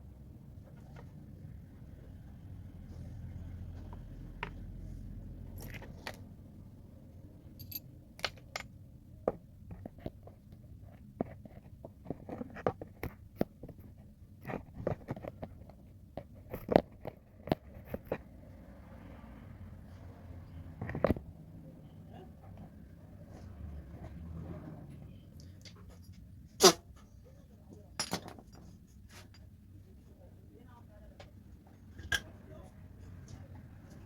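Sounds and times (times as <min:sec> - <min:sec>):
tools and parts clicking: 0:07.6 - 0:08.8.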